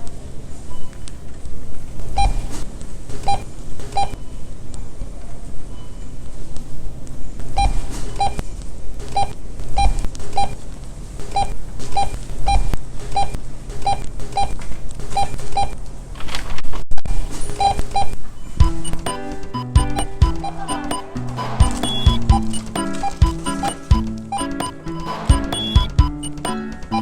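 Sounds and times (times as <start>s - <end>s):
checkout scanner beeps: 0.7s - 1.2s, 2.2s - 2.4s, 3.3s - 4.5s, 7.6s - 8.4s, 15.2s - 15.8s, 17.6s - 27.0s.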